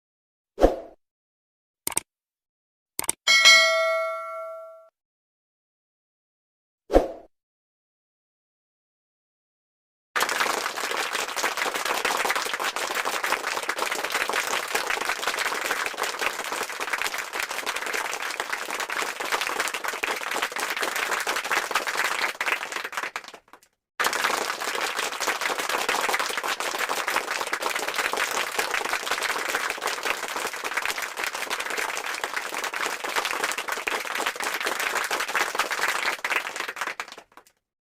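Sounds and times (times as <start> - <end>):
crowd clapping: 10.2 - 37.6.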